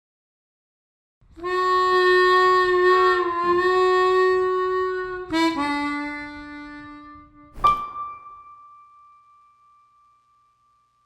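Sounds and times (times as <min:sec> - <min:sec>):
solo wind instrument: 0:01.3 - 0:08.7.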